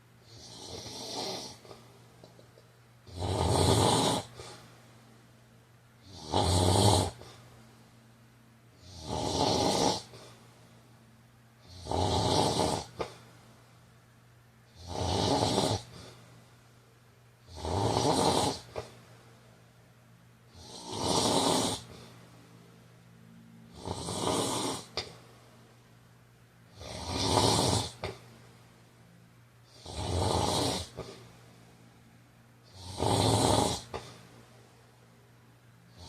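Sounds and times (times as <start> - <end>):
man snoring: 0.2 - 1.8, 3.0 - 4.6, 6.0 - 7.4, 8.8 - 10.3, 11.6 - 13.2, 14.7 - 16.1, 17.4 - 18.9, 20.5 - 22.1, 23.7 - 25.2, 26.7 - 28.2, 29.7 - 31.2, 32.6 - 34.2.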